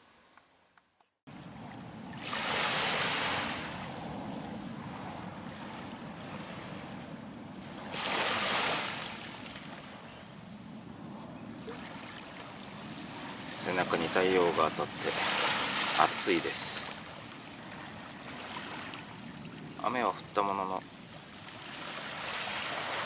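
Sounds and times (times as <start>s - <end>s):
waves breaking on a beach: 1.3s - 23.0s.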